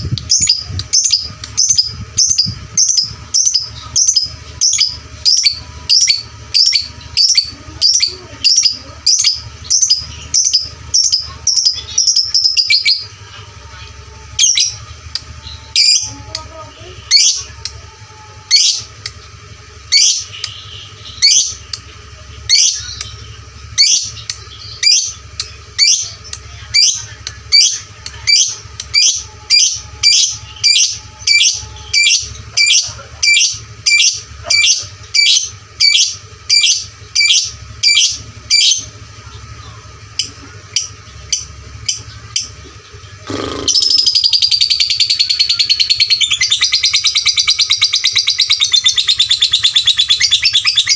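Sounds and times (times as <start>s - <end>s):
lovebird chattering trill: 0.0s - 50.9s
lovebird chirping: 0.2s - 13.2s, 22.5s - 38.9s, 40.2s - 50.9s.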